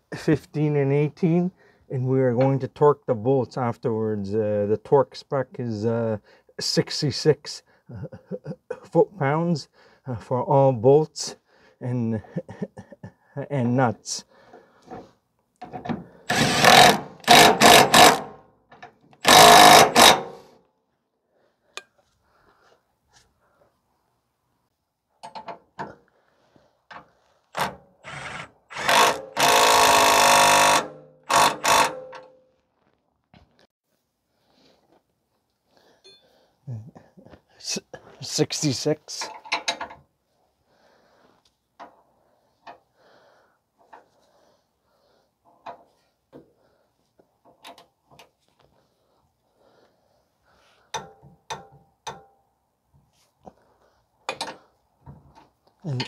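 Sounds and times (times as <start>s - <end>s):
power wrench spinning bolt: 16.3s - 18.3s, 19.2s - 20.4s, 27.6s - 32.3s
metal tools clicking and knocking: 25.2s - 26.0s, 39.2s - 40.0s, 50.9s - 52.4s, 54.3s - 54.7s.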